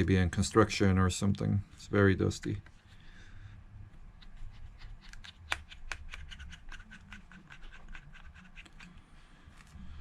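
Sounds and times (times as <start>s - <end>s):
screwdriver ticks and scratches: 4.2s - 9.0s.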